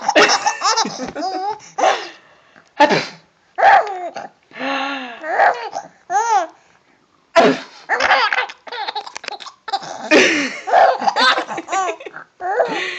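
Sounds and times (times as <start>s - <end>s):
baby laughing: 0.0s - 2.0s, 5.2s - 6.5s, 7.9s - 12.8s.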